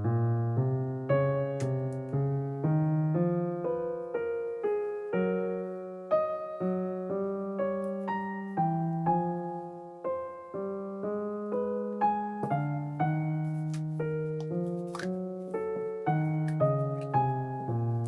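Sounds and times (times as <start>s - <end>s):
piano music: 0.0s - 18.0s.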